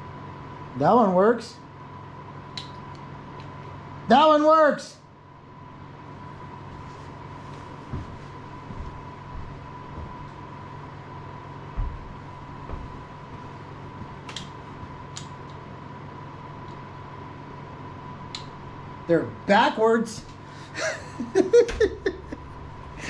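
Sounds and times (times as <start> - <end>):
electrical hum: 0.0 - 23.0
high whine: 16.0 - 23.0.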